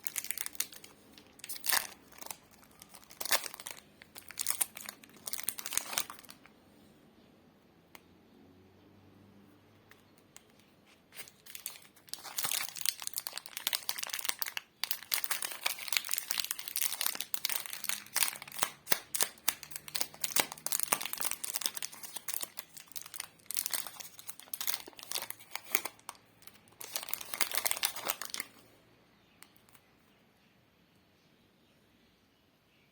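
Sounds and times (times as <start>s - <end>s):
plastic wrapper crinkling: 0.0s - 6.5s, 10.0s - 28.7s.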